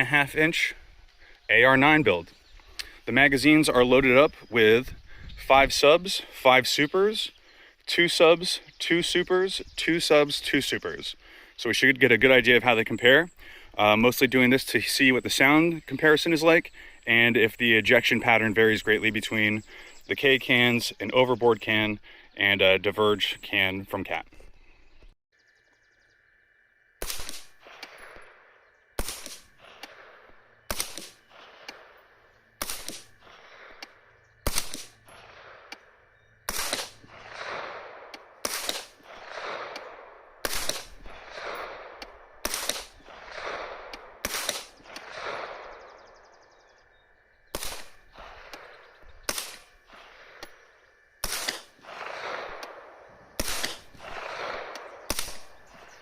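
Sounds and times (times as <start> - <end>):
rolling echo of gunshots: 27.0 - 46.4, 47.5 - 56.0
suppressed gunshots: 27.0 - 46.6, 47.5 - 56.0.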